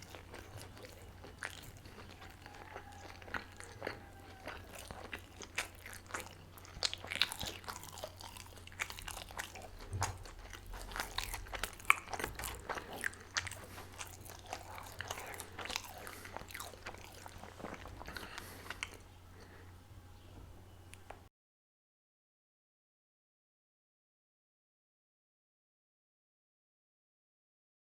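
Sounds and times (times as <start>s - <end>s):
chewing and crunching pastry: 0.0s - 19.8s.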